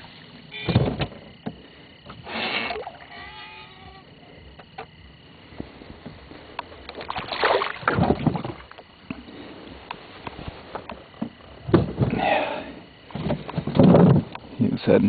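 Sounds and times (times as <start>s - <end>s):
water splashing against boat: 7.0s - 8.8s.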